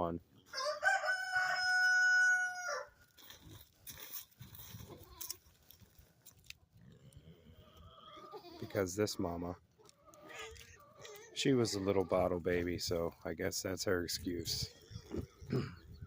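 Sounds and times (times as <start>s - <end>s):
rooster crowing: 0.5s - 3.0s.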